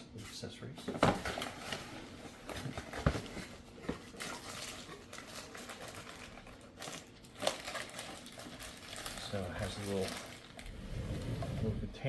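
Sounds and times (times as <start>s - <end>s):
packaging rustling: 0.9s - 10.9s.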